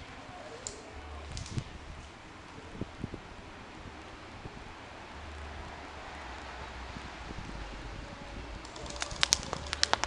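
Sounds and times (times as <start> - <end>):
low wind rumble: 1.0 - 10.0
rustling: 8.6 - 10.0
sharp clicks: 8.6 - 10.0.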